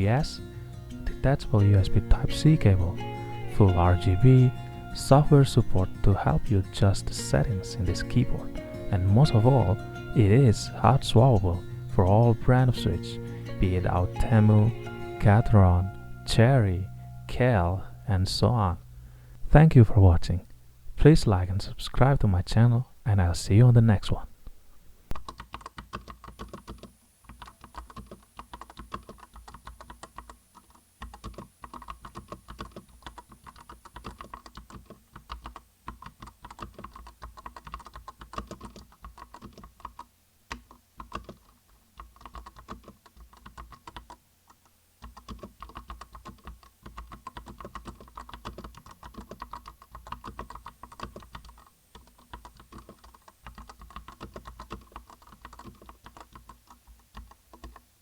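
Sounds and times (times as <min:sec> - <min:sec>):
mechanical keyboard keystroke clacks: 0:25.2 - 0:57.9.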